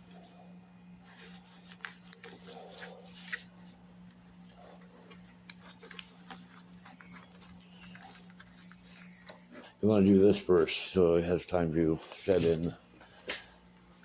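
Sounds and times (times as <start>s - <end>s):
steady low hum: 0.0s - 14.0s
objects being handled: 1.0s - 9.8s.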